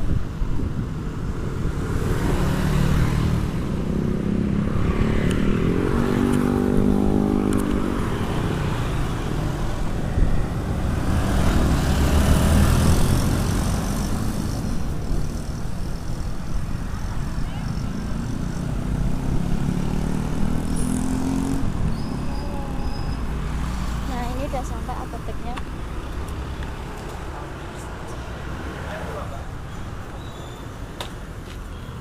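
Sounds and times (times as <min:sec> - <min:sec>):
low traffic rumble: 0:00.0 - 0:32.0
vehicles passing: 0:00.0 - 0:32.0.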